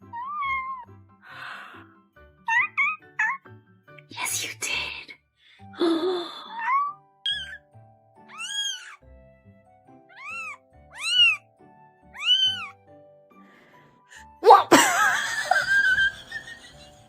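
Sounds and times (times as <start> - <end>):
cat meowing: 0.0 - 0.9, 2.5 - 3.5, 6.5 - 7.6, 8.3 - 9.0, 10.1 - 12.8
background music: 0.0 - 17.0.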